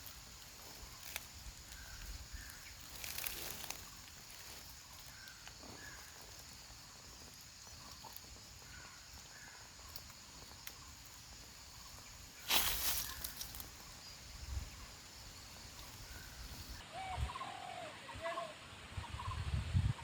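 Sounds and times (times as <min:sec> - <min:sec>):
faint high hiss: 0:00.0 - 0:20.0
faint bird chirps: 0:01.6 - 0:19.5
loud rustle: 0:12.4 - 0:13.7.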